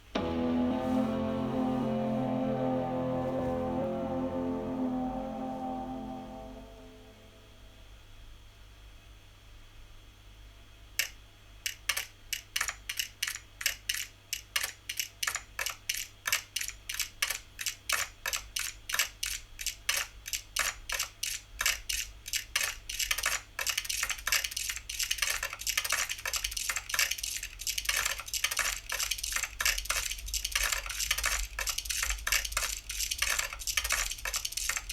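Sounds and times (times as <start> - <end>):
keyboard keystroke clicks: 11.0 - 34.9.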